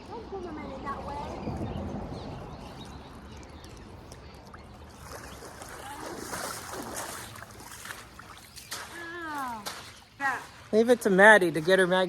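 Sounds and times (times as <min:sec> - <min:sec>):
water splashing around wading person: 0:03.6 - 0:12.0.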